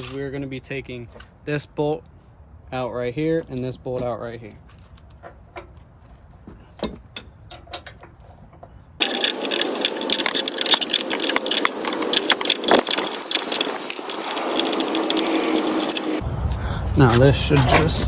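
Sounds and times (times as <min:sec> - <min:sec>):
rapid mechanical tool rattle: 0:09.0 - 0:16.2.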